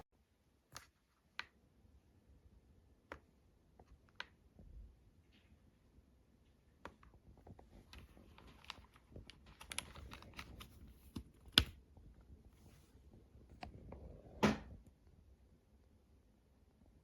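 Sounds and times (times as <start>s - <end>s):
mechanical keyboard typing: 8.4s - 11.7s.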